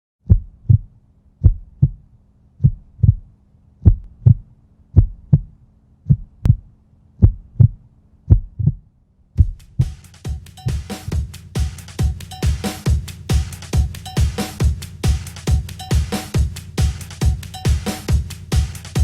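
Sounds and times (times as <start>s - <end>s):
heartbeat thumps: 0.3s - 2.0s, 2.6s - 3.2s, 3.8s - 4.4s, 5.0s - 5.5s, 7.2s - 8.8s, 9.4s - 19.0s.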